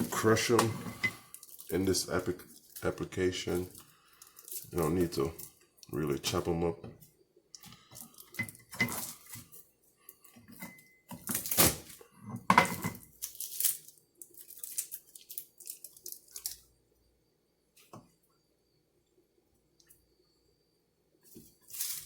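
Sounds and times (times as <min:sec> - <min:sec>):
crinkly rustling and scraping: 0:00.0 - 0:07.1, 0:07.7 - 0:16.7, 0:21.2 - 0:22.0.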